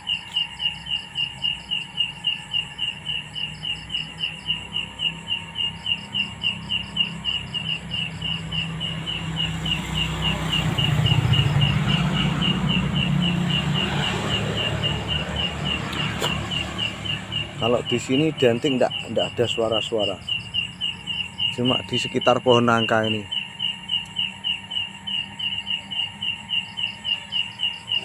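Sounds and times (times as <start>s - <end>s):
insect chirping: 0.0s - 28.0s.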